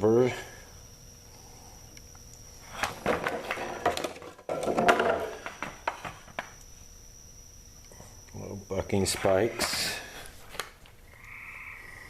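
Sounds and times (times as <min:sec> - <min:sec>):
plastic clatter: 0:02.8 - 0:06.5.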